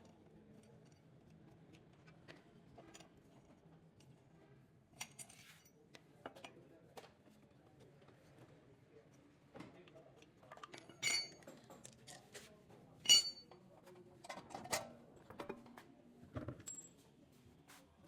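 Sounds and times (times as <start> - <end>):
metal tools clinking and knocking: 10.6 - 12.2, 13.0 - 13.5, 16.5 - 17.0
ringing metallic clanks: 13.1 - 13.4.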